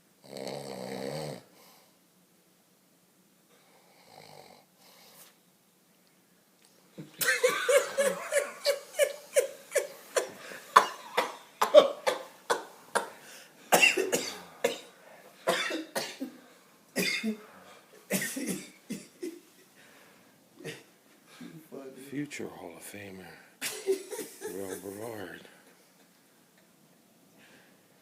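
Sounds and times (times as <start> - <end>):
faint snore: 0.2 - 1.9, 3.6 - 5.2
laughter: 7.0 - 12.7, 23.6 - 25.1
rapid choppy coughing: 7.1 - 16.4, 17.0 - 19.4.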